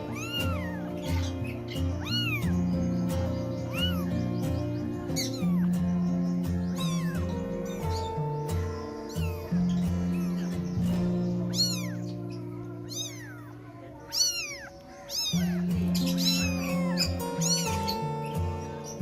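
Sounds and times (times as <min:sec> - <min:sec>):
kitten meowing: 0:00.0 - 0:05.8, 0:06.7 - 0:08.4, 0:11.4 - 0:18.3
background music with sustained notes: 0:00.0 - 0:13.8.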